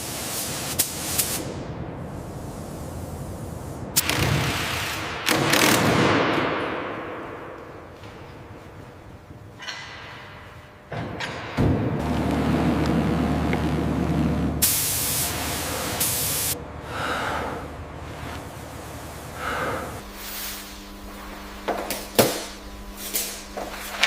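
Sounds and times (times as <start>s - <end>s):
spray hissing: 0.0s - 4.0s, 14.1s - 16.6s, 18.0s - 23.5s
steady hum: 0.0s - 24.0s
low machine rumble: 6.0s - 24.0s.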